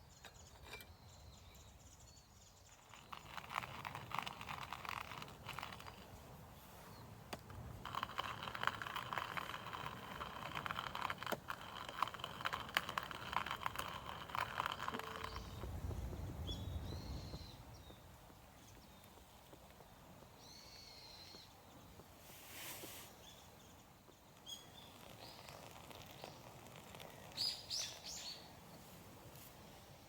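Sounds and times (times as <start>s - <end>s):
cooking fire crackling and sizzling: 2.7s - 20.6s, 24.4s - 28.2s.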